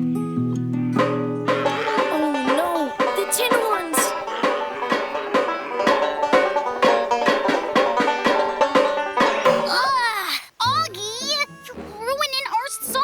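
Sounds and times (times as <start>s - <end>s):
banjo played fast: 1.0s - 9.9s.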